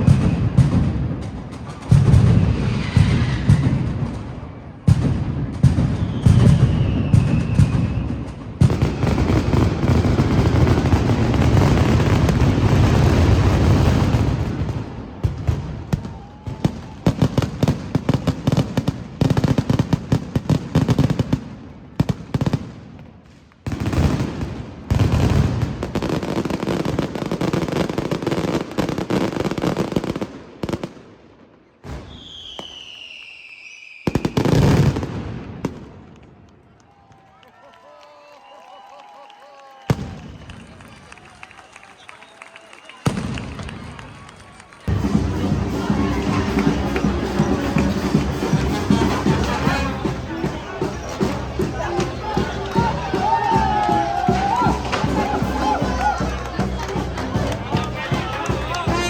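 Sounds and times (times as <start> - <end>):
firecracker bangs and booms: 0.0 - 36.2, 39.9 - 40.7, 43.0 - 44.1, 44.9 - 59.0
falling firework whistles: 1.7 - 5.0, 5.6 - 10.3, 31.8 - 35.0, 39.9 - 40.8.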